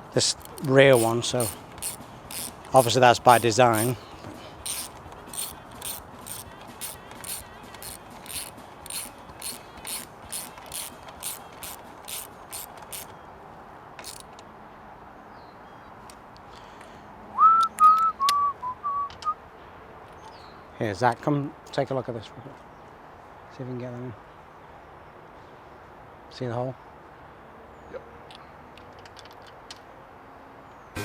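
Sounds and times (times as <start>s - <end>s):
hand ratchet clicking: 0.0s - 4.0s, 4.6s - 13.1s, 14.0s - 14.4s
person whistling short notes: 17.4s - 19.4s.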